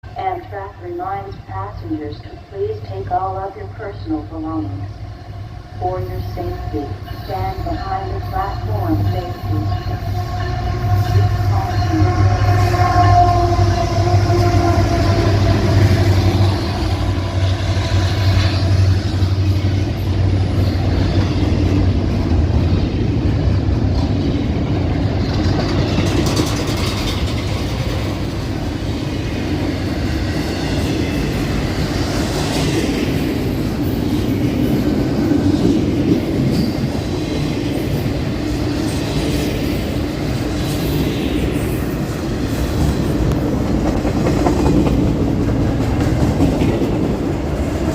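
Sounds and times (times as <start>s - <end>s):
diesel locomotive engine rumble: 0.0s - 47.9s
train wheels on rails clicking: 19.0s - 28.9s, 29.7s - 47.9s.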